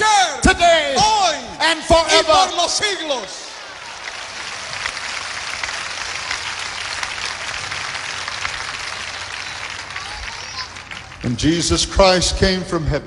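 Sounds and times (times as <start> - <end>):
crowd applauding: 2.8 - 12.0.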